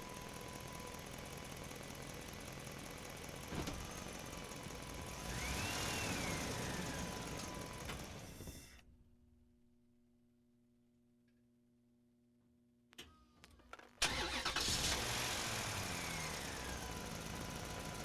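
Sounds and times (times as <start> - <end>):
vehicle engine running: 0.0 - 8.4, 14.1 - 18.0.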